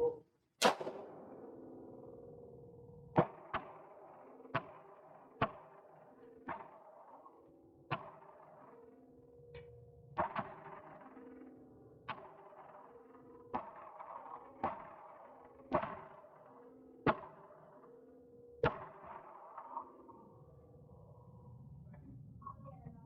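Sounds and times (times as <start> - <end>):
gunshots with ringing echo: 0.6 - 2.0.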